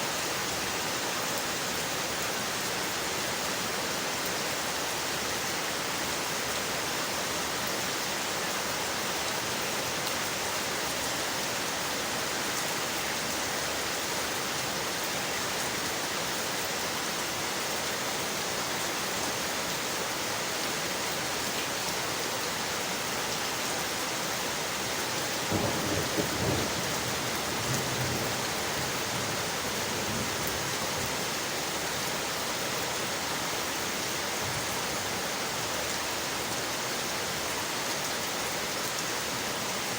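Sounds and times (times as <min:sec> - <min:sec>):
rain on windowpanes: 0:00.0 - 0:39.9
low rumble of thunder: 0:25.4 - 0:31.0.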